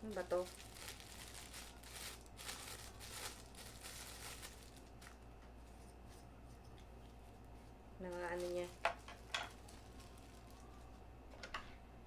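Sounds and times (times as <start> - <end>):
packaging rustling and crinkling: 0.0 - 5.2, 8.0 - 10.9
low steady hum: 0.0 - 12.0.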